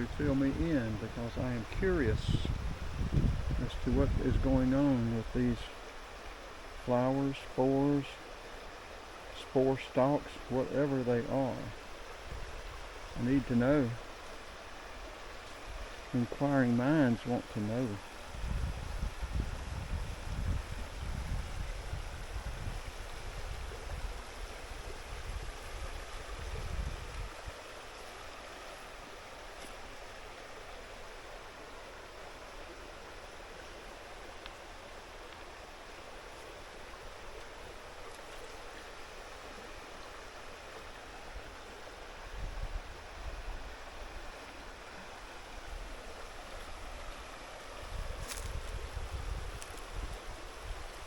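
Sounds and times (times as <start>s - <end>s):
wind rumble on microphone: 0.0s - 5.7s, 12.1s - 13.5s, 17.6s - 27.8s, 42.2s - 51.0s
creek water running: 0.0s - 51.0s.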